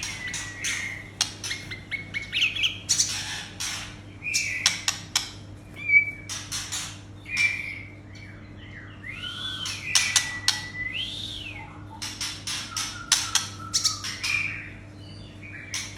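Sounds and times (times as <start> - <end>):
bird singing with whistles: 0.0 - 3.2, 5.8 - 6.4, 7.2 - 15.9
harsh chattering bird notes: 0.0 - 8.5, 9.3 - 11.1, 11.8 - 15.9
low electrical hum: 0.0 - 15.9.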